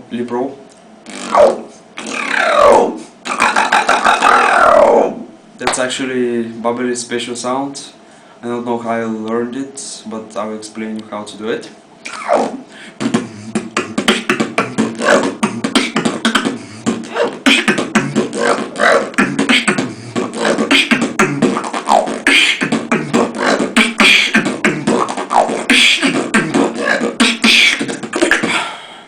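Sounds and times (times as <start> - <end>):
person beatboxing: 1.0 - 5.8, 12.0 - 29.0.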